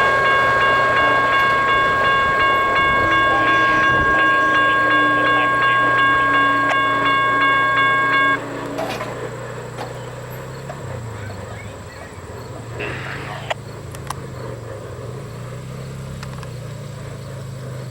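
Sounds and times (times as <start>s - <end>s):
locomotive air horn chord: 0.0s - 10.3s
train wheels clicking: 0.0s - 17.0s
train rumbling past: 0.0s - 17.9s.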